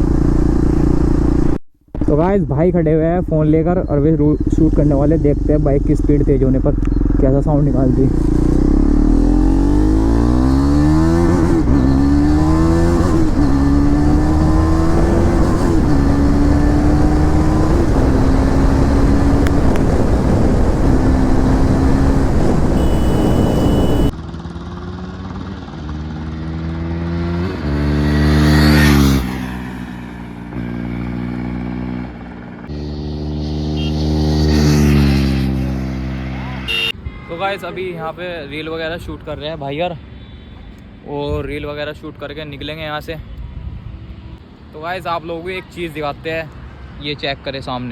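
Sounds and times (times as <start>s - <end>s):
motorcycle revving and passing: 0.0s - 1.6s, 4.0s - 37.1s
motorcycle engine accelerating: 0.0s - 2.1s, 3.5s - 36.9s
wind rush: 13.0s - 24.1s.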